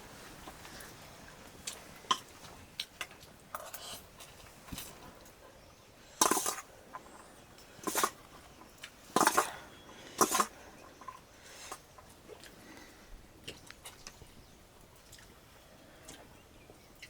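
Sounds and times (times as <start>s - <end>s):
spoons clinking against bowls: 6.2s - 6.7s
dishes clattering: 6.2s - 7.1s.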